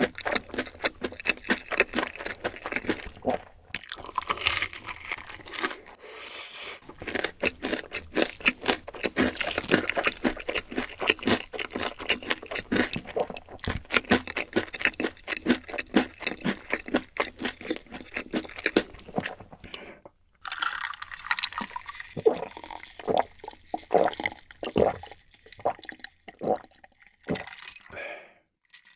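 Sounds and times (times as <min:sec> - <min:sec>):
wet crackling chewing: 0:00.0 - 0:06.0, 0:06.8 - 0:19.8.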